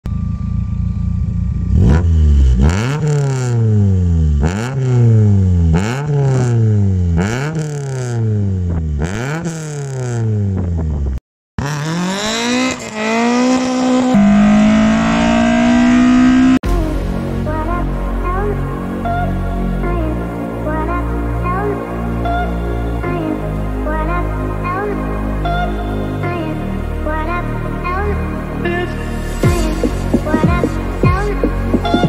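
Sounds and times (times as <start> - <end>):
car engine revving: 0.1 - 32.0
car accelerating through gears: 11.6 - 16.6.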